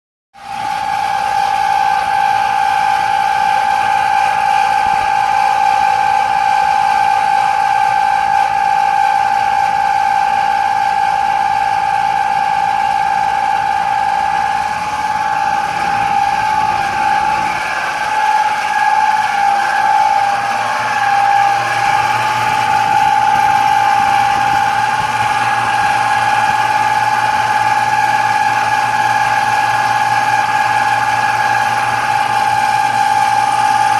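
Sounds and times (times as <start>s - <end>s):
air conditioner fan rushing: 0.4s - 33.9s
air conditioner whine: 0.4s - 33.9s.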